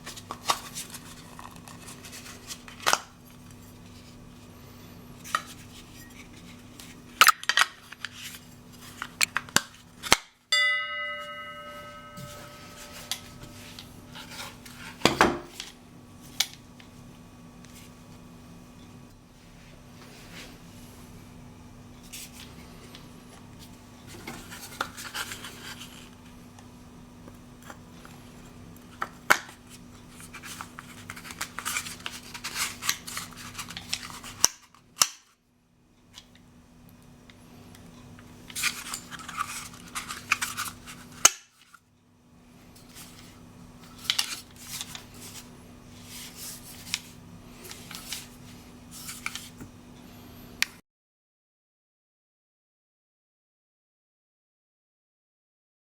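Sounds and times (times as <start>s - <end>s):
packaging rustling and crinkling: 0.0s - 4.2s, 29.4s - 34.8s, 38.5s - 41.8s.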